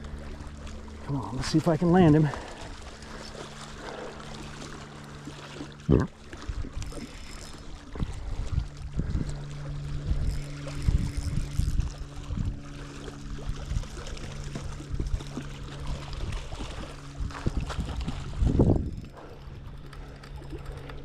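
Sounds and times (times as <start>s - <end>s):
steady low hum: 0.0s - 21.0s
water trickling and splashing: 0.0s - 21.0s
wind gusts on microphone: 17.1s - 19.2s.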